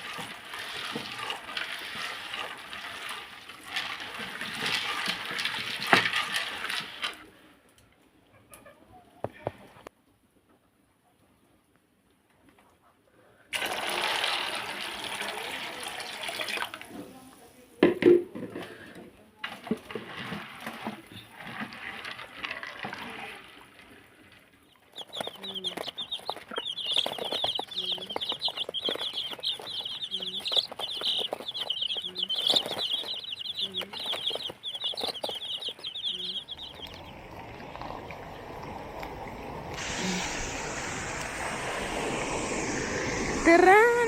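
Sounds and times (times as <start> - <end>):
chickens clucking: 0.0 - 3.1, 8.2 - 9.8, 23.0 - 44.0
dense high chirping: 24.7 - 44.0.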